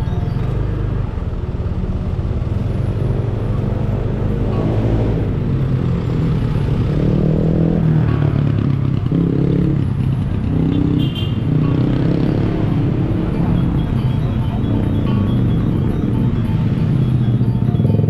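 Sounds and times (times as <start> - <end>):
car engines running: 0.0 - 18.0
motorcycle engines running: 0.0 - 18.0.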